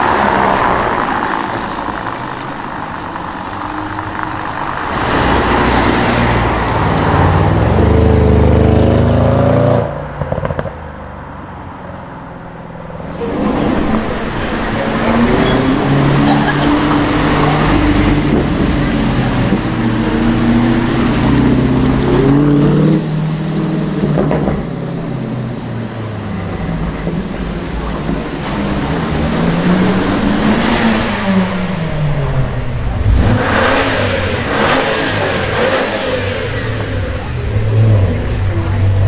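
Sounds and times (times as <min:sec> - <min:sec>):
car engine revving: 0:00.0 - 0:10.7, 0:12.8 - 0:39.0.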